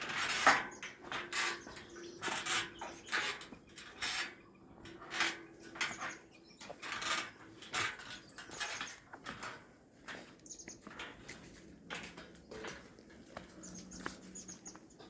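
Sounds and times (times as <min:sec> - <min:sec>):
footsteps crunching on forest path: 0:06.6 - 0:15.0.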